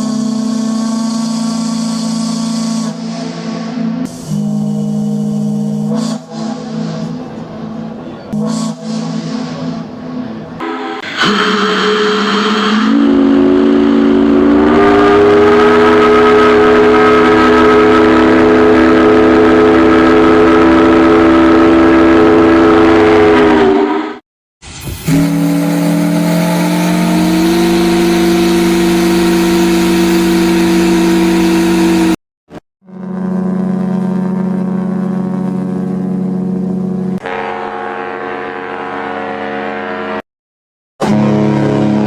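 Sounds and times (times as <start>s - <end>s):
ship's whistle blasts: 0.0s - 7.3s, 8.3s - 9.9s, 10.6s - 24.2s, 25.0s - 32.2s, 37.2s - 40.2s, 41.0s - 42.0s.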